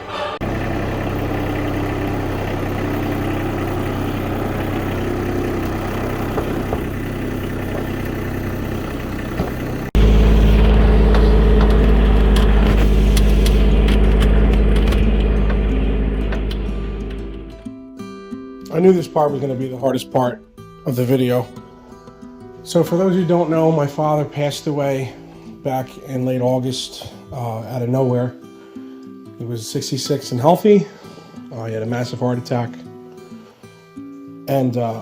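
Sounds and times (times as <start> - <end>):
deep engine rumble: 0.0 - 17.6
vehicle engine running: 0.0 - 17.6.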